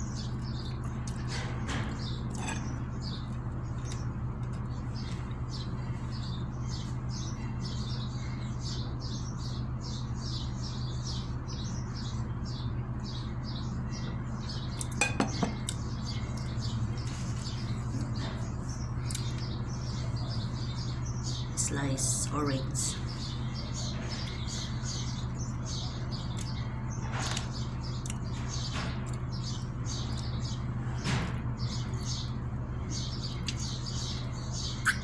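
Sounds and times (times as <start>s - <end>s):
low steady hum: 0.0s - 35.0s
cutlery or dishes clattering: 15.0s - 15.6s
high-pitched chirping: 34.6s - 35.0s.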